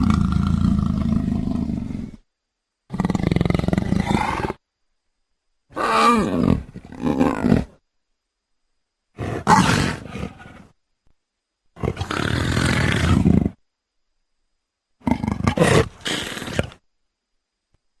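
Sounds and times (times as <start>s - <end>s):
leopard calling harshly: 5.7s - 7.7s, 9.2s - 10.6s.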